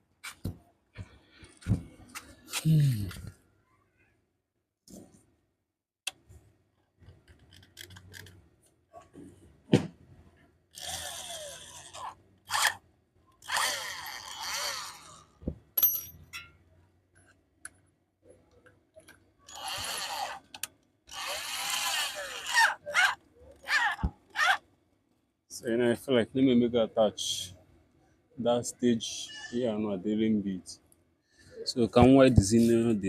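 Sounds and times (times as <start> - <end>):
electric drill grinding steel: 10.7 - 12.8, 13.4 - 15.4, 19.5 - 20.5, 21.1 - 24.6.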